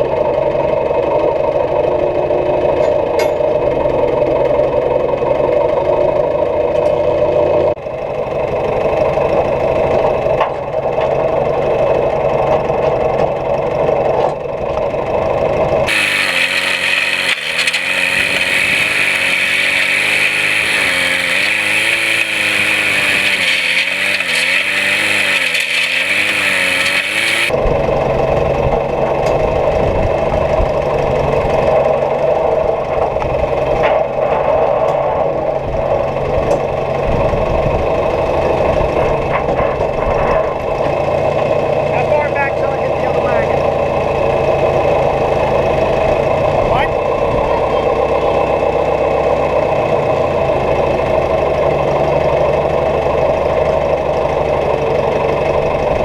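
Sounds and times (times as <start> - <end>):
farm machinery engines running: 15.7 - 27.5
wavering engine note: 15.9 - 27.5.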